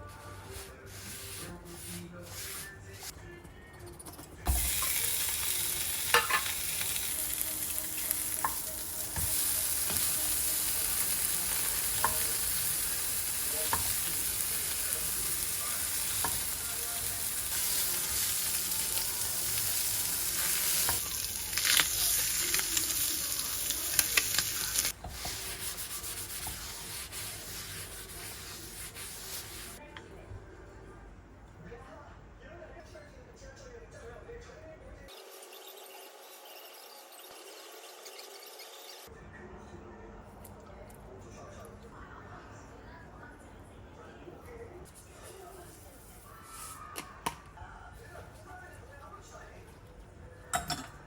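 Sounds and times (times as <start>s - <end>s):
food sizzling in a pan: 4.5s - 29.8s.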